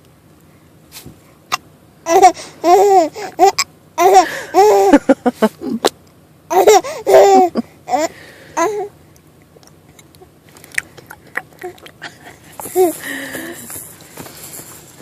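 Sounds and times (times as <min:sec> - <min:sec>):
baby laughing: 0:02.1 - 0:05.9, 0:06.5 - 0:08.9, 0:10.8 - 0:13.8.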